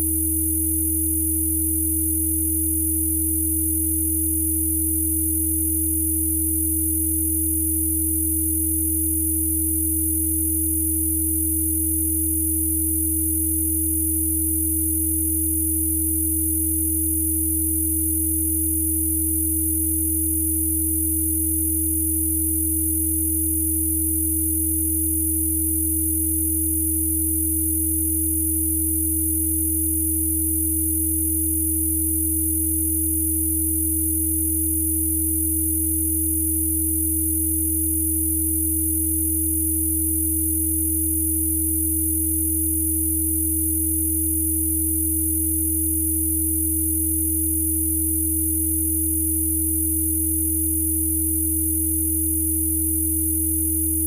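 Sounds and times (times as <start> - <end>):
deep hum tone: 47.3 - 54.0.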